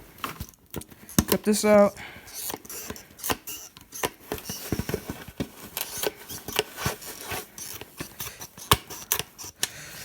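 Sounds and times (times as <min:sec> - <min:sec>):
snips cutting plastic: 0:02.3 - 0:09.8.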